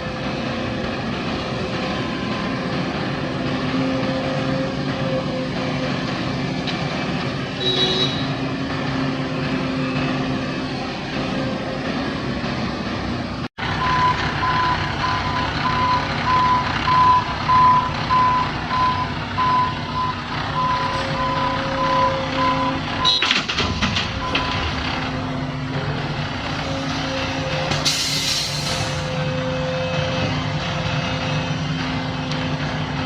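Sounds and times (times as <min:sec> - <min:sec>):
heavy vehicle engine running: 0:00.0 - 0:33.0
reversing alarm beeping: 0:13.7 - 0:23.4, 0:24.2 - 0:24.8.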